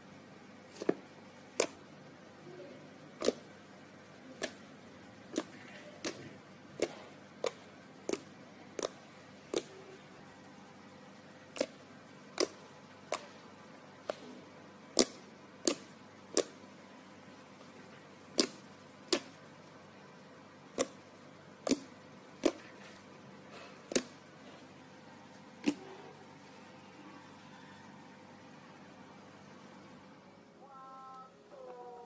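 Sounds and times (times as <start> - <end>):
slime popping: 5.3 - 9.8, 20.7 - 21.0.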